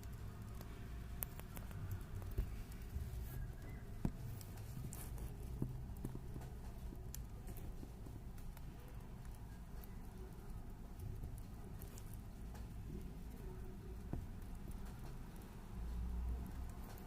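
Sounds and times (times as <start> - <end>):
hamster chewing: 0.0 - 17.0
low steady hum: 0.0 - 17.0.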